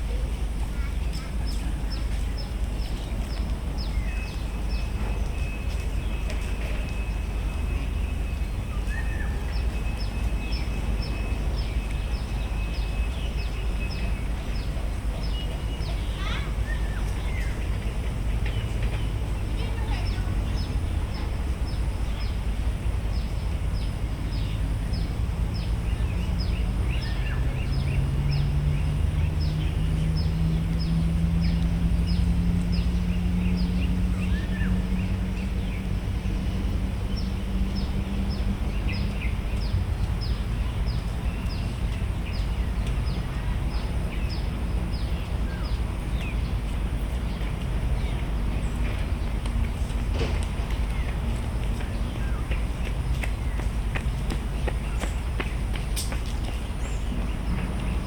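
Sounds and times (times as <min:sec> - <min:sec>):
distant traffic rumble: 0:00.0 - 0:58.0
low engine drone: 0:17.8 - 0:52.8.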